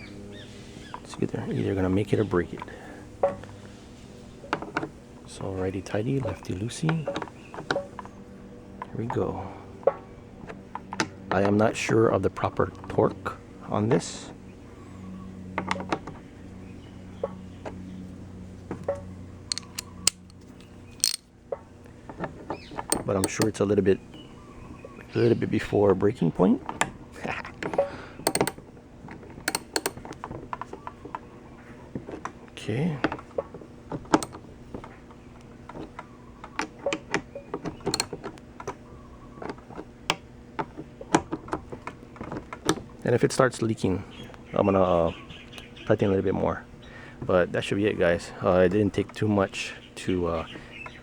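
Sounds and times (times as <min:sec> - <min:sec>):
sharp clicks: 0:19.5 - 0:21.2, 0:22.9 - 0:23.6, 0:28.3 - 0:28.6, 0:29.5 - 0:30.2, 0:37.8 - 0:38.2.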